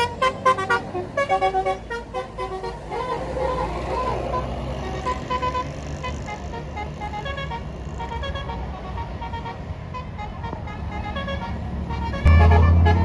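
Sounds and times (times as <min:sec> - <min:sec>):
bus engine rumble: 0:00.0 - 0:13.0
musical air horn tune: 0:04.8 - 0:13.0.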